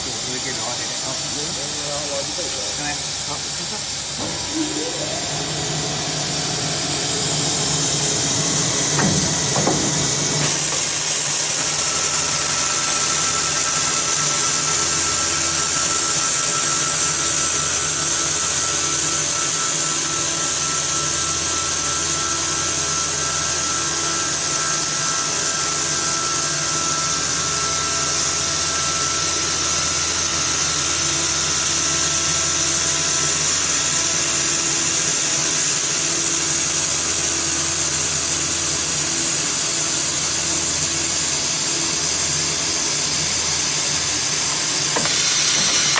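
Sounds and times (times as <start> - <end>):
saw machine cutting metal: 0.0 - 45.9
thin whine: 0.0 - 45.9
machine knock: 8.9 - 11.0, 44.9 - 45.9.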